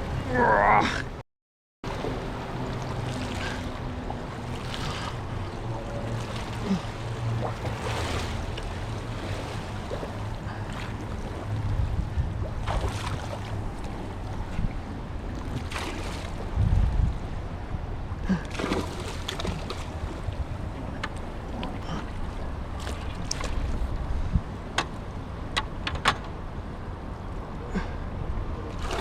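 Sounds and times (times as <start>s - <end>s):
water lapping against a kayak: 1.9s - 25.5s, 26.9s - 29.0s
wind on microphone: 8.3s - 18.4s, 23.2s - 24.8s.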